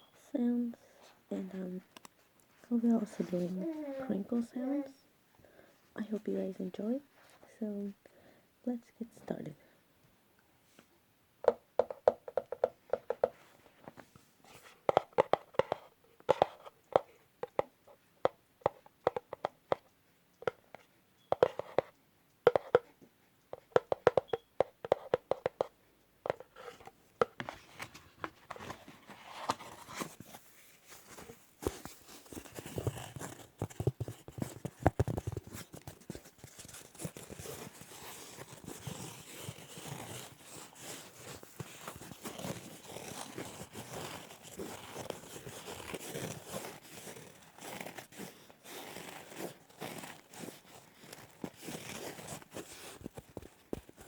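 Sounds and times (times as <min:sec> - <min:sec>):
rustling and scratching: 0:01.0 - 0:05.0, 0:12.9 - 0:18.0, 0:26.3 - 0:54.0
fingernails tapping on a box: 0:18.6 - 0:19.8, 0:22.5 - 0:22.9, 0:23.6 - 0:25.7.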